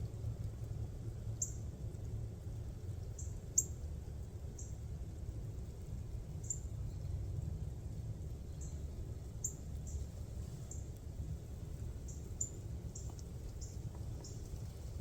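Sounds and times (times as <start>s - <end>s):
steady low rumble: 0.0s - 15.0s
small bird chip calls: 1.4s - 1.6s, 6.4s - 7.2s, 8.4s - 10.9s, 12.0s - 15.0s.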